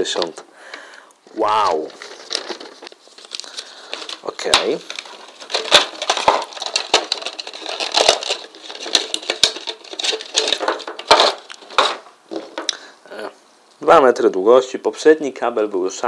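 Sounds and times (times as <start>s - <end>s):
packaging crinkling and clicking: 0.1s - 12.8s.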